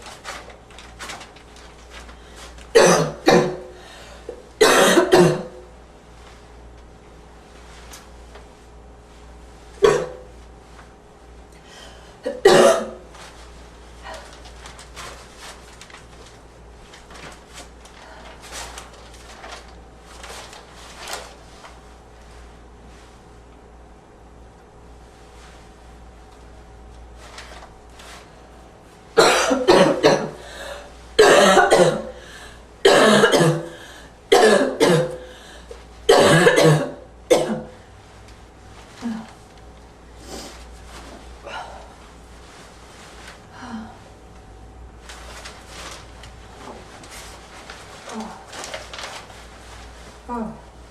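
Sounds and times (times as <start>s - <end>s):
person coughing: 2.7s - 3.8s, 4.6s - 5.6s, 9.8s - 10.3s, 12.2s - 13.0s, 29.2s - 32.2s, 32.8s - 35.4s, 36.1s - 37.8s.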